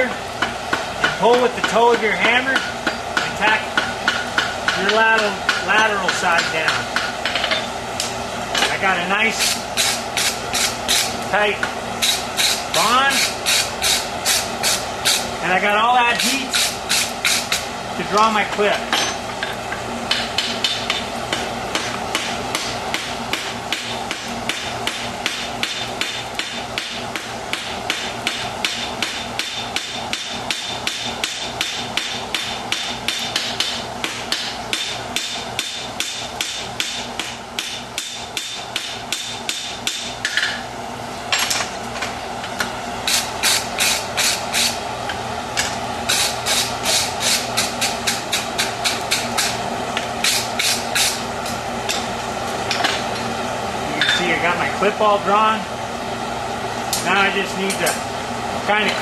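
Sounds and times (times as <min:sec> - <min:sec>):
hammer striking hot steel: 0:00.4 - 0:08.1, 0:18.9 - 0:40.5.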